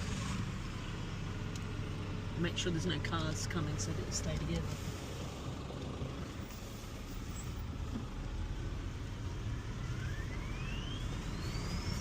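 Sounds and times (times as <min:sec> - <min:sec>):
car engine low rumble: 0:00.0 - 0:12.0
faint thin whistle rising: 0:10.0 - 0:12.0.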